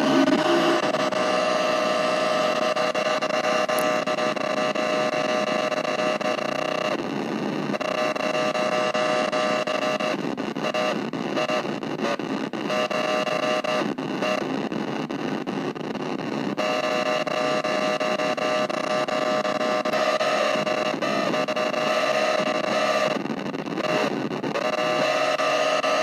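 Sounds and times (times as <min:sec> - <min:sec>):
harsh synthesizer drone: 0:00.0 - 0:04.4, 0:16.6 - 0:23.2, 0:23.8 - 0:26.0.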